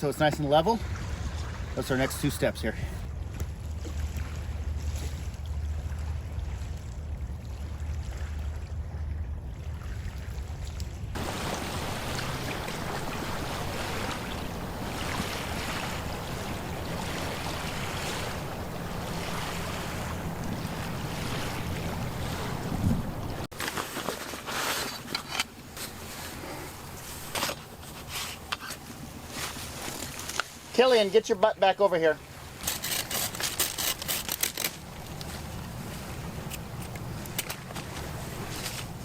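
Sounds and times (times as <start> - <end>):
wind: 0.0 - 39.0
surf waves washing in: 11.1 - 25.0, 25.6 - 39.0.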